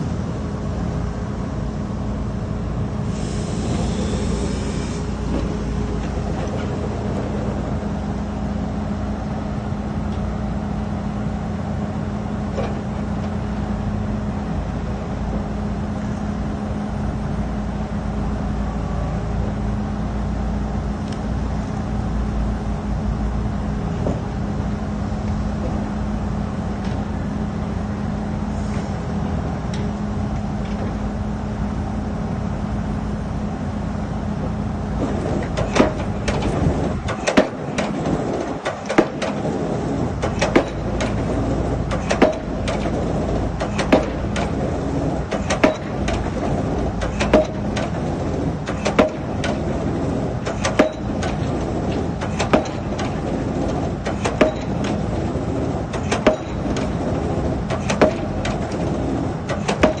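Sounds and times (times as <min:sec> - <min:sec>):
machine engine running: 0:00.0 - 1:00.0
pile driver hammer blows: 0:35.0 - 1:00.0.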